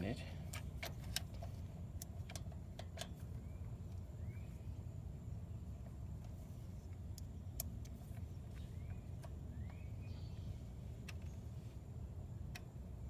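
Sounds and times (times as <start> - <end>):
low background rumble: 0.0 - 13.0
faint rising chirps: 3.2 - 7.5.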